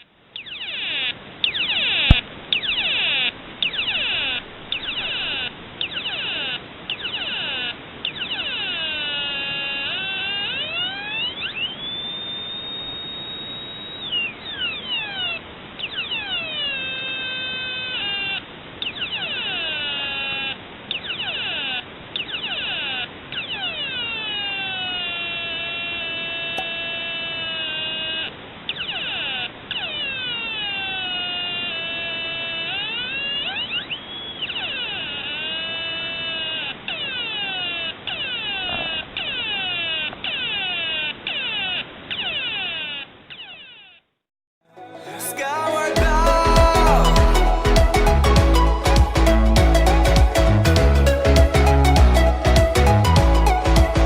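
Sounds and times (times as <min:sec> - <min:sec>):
electronic siren chirps: 0:00.0 - 0:44.0, 0:44.7 - 0:54.0
steady high whistle: 0:11.3 - 0:14.9.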